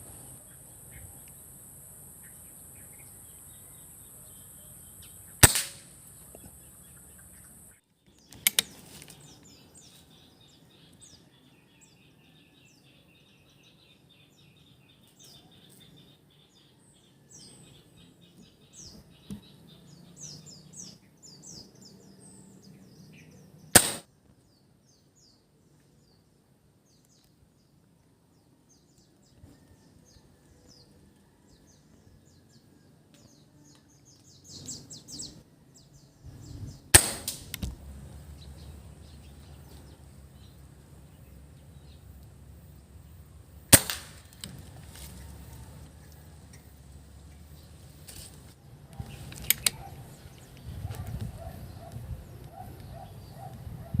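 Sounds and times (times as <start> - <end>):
small birds chirping: 0.0 - 36.9, 37.5 - 43.8, 44.4 - 54.0
air rifle firing: 5.4 - 6.0, 23.8 - 24.1, 36.9 - 37.6, 43.7 - 44.4.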